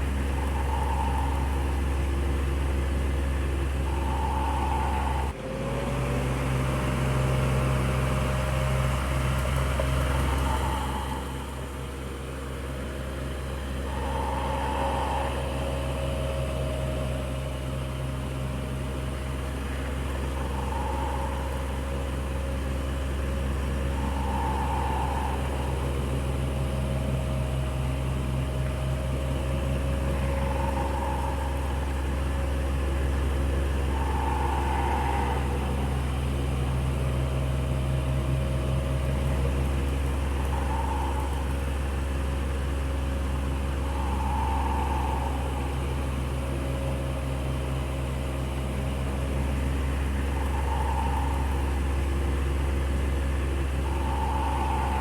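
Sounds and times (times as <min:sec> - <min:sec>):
faint tone: 0:00.0 - 0:05.4, 0:09.8 - 0:55.0
electric fan running: 0:00.0 - 0:55.0.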